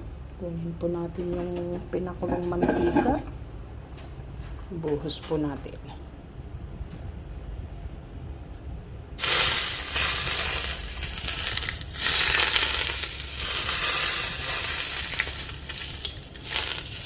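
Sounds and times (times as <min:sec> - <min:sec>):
hot oil sizzling and crackling: 0:09.2 - 0:17.0.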